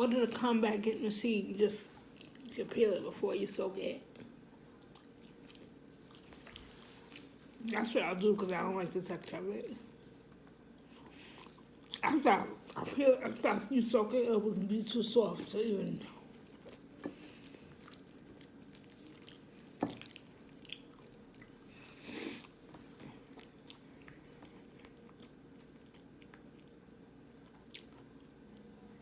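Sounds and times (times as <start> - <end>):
person chewing food: 2.0 - 2.5, 4.1 - 7.6, 10.0 - 12.8, 16.3 - 28.8.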